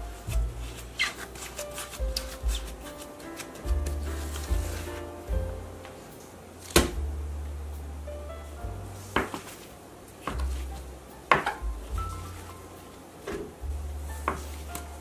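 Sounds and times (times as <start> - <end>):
deep bass line: 0.0 - 1.0, 3.7 - 9.3, 10.3 - 15.0.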